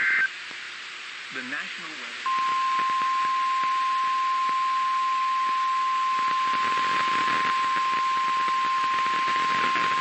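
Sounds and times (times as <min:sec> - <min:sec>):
radio hiss and crackle: 0:00.0 - 0:10.0
long steady alarm beep: 0:02.3 - 0:10.0.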